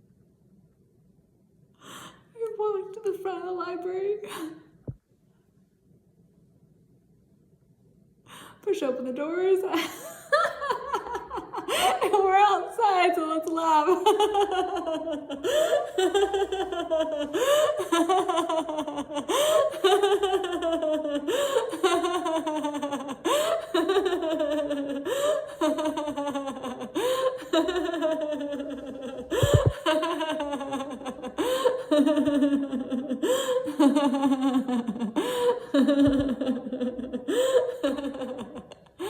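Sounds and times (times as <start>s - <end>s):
woman laughing loudly: 9.8s - 12.6s, 13.8s - 39.0s.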